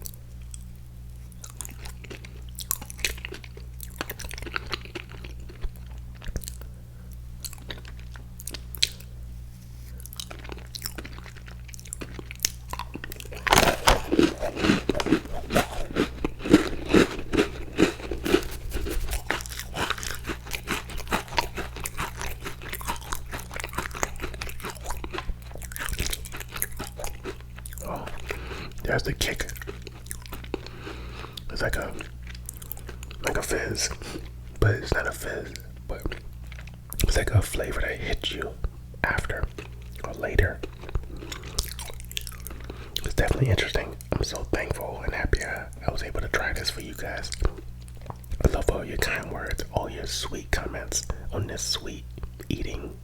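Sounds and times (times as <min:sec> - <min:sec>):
cookie crunching and chewing: 0:00.0 - 0:53.0.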